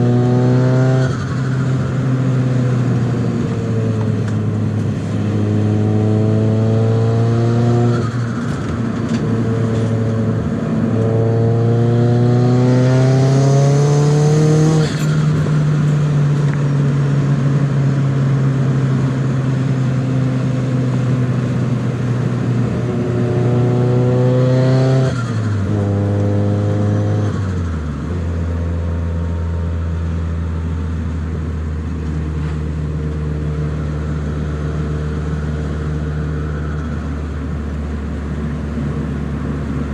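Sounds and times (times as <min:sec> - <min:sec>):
car engine revving through gears: 0:00.0 - 0:17.4, 0:22.2 - 0:30.2.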